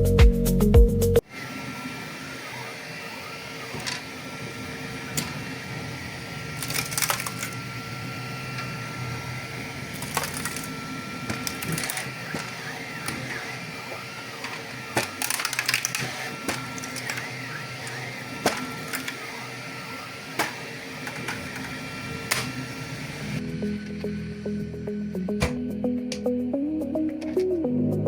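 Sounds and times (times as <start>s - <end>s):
stepper motors whining: 1.2s - 27.5s
printer sharp clicks and crackles: 6.5s - 7.7s, 9.9s - 23.4s.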